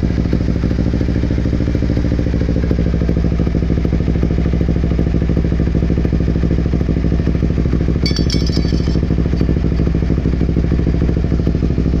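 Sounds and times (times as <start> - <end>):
motorcycle engine idling: 0.0 - 12.0
high-pitched jingle: 8.0 - 9.6.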